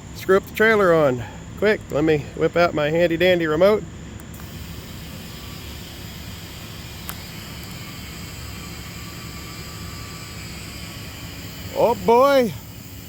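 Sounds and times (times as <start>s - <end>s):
truck engine hum: 0.0s - 13.0s
sharp click: 4.2s - 4.5s, 7.0s - 7.8s.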